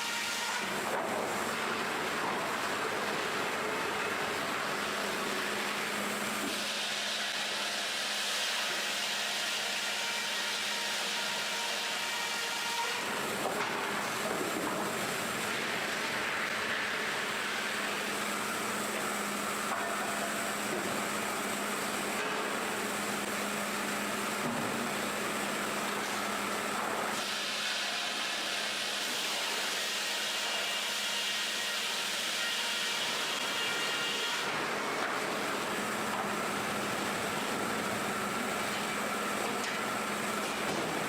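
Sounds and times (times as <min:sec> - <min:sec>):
sawmill machinery hum: 0:00.0 - 0:41.0
hiss of sawing: 0:06.4 - 0:13.2, 0:27.0 - 0:34.6.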